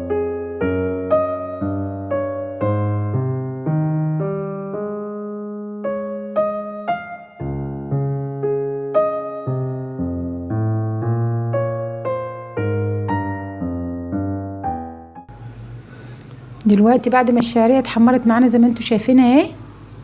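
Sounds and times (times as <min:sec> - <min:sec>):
piano-like keyboard music: 0:00.0 - 0:15.8.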